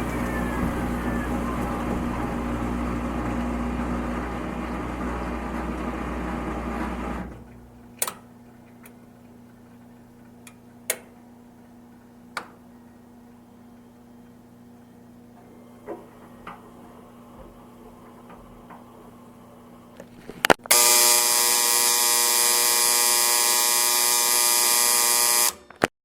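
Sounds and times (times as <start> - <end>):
washing machine running: 0.0 - 8.4, 15.3 - 19.9.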